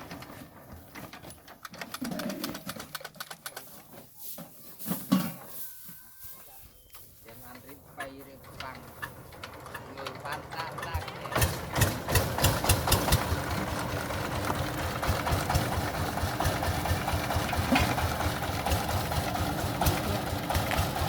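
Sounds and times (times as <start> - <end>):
engine running steadily: 8.1 - 21.0.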